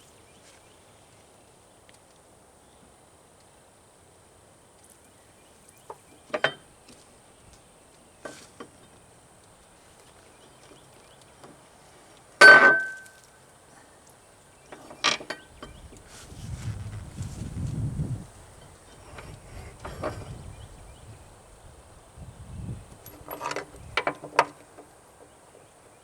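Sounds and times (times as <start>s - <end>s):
metal tools clinking and knocking: 12.4s - 13.2s, 22.9s - 24.4s.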